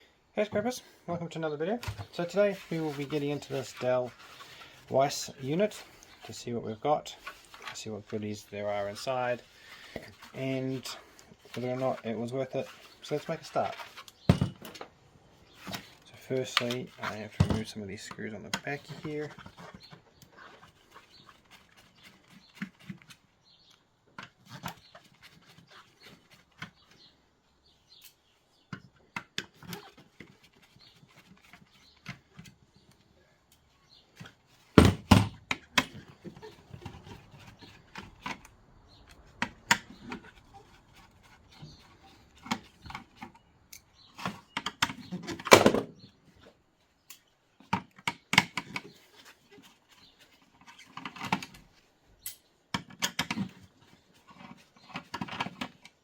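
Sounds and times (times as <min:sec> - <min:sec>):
casing knocked and handled: 0:13.4 - 0:14.9, 0:16.6 - 0:17.8, 0:44.2 - 0:46.1.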